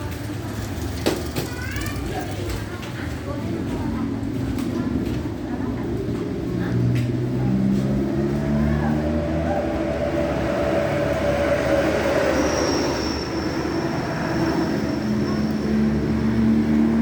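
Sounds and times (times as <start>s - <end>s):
vehicle running: 3.6s - 17.0s.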